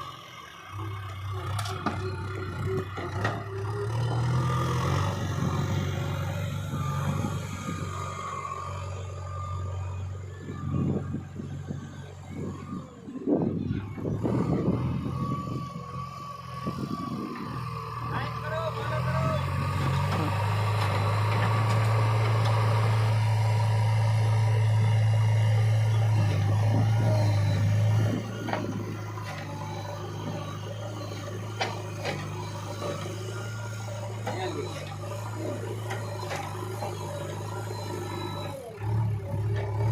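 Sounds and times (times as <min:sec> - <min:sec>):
diesel engine working: 0:00.0 - 0:39.9.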